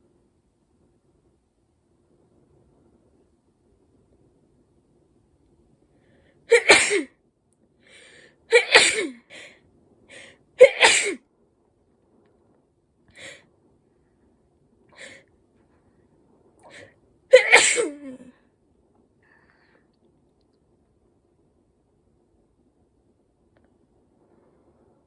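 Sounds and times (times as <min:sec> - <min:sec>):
person sneezing: 0:06.5 - 0:07.1, 0:08.5 - 0:09.2, 0:10.6 - 0:11.2, 0:16.7 - 0:18.3.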